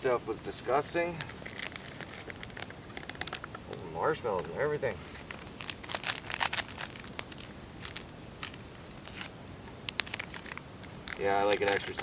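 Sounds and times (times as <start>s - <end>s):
plastic packaging crinkling: 1.1s - 3.6s, 4.3s - 9.3s, 9.9s - 12.0s.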